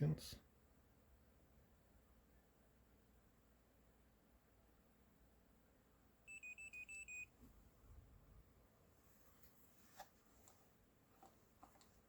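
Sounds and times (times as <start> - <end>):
short high electronic beeps: 6.3 - 7.3.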